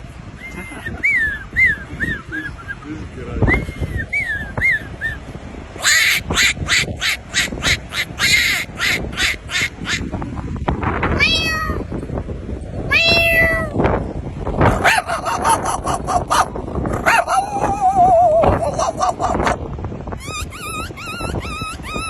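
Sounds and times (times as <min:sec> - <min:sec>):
animal harsh calls: 0:05.8 - 0:10.1, 0:14.7 - 0:19.6.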